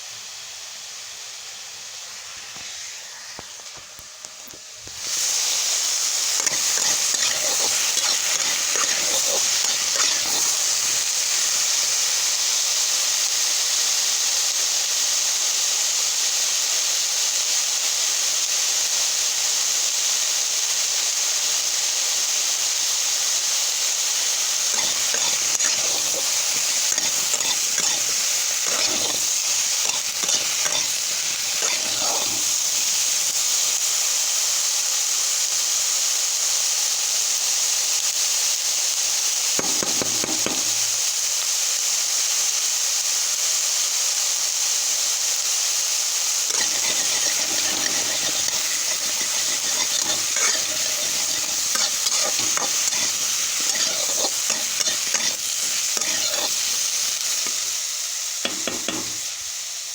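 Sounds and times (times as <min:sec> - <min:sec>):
vegetables sizzling in a pan: 0:00.0 - 0:59.9
stirring scrape and rattle: 0:06.2 - 0:11.7, 0:24.2 - 0:33.0, 0:39.6 - 0:41.0, 0:46.5 - 0:57.8, 0:58.5 - 0:59.2.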